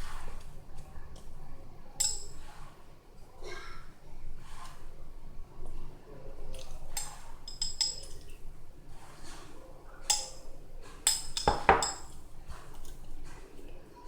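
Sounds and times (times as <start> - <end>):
cutlery and dishes clinking: 2.0 - 2.7, 6.5 - 8.4, 10.0 - 13.1.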